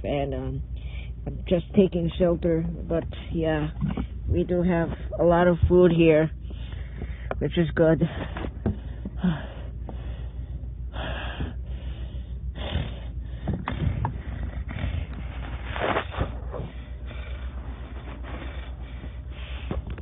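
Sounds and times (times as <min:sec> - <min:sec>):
low steady hum: 0:00.0 - 0:20.0
person breathing close to microphone: 0:06.4 - 0:07.4, 0:08.0 - 0:20.0.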